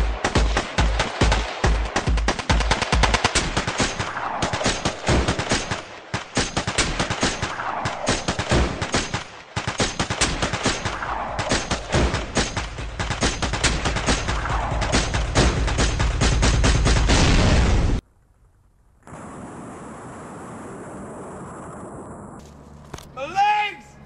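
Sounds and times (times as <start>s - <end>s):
rapid machine-gun fire: 0.0s - 18.0s.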